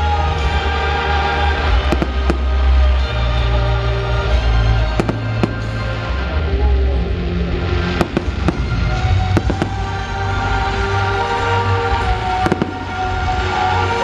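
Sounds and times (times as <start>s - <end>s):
music playing: 0.0s - 14.0s
fireworks bangs: 1.6s - 3.5s, 4.8s - 6.2s, 7.7s - 14.0s.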